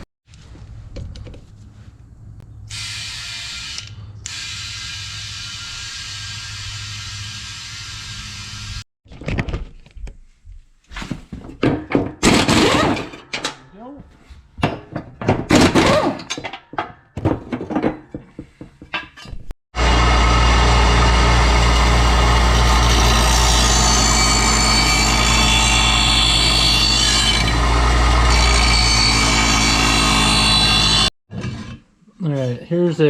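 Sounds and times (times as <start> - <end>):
metal clanks and knocks: 11.3 - 19.5
electric grinder grinding metal: 19.8 - 31.1.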